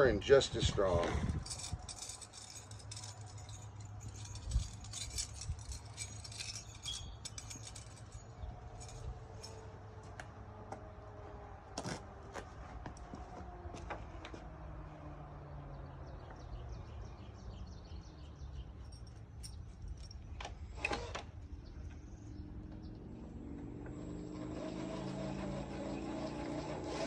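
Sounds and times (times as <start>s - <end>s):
small metal hardware clinking: 1.4s - 9.7s, 18.8s - 20.4s.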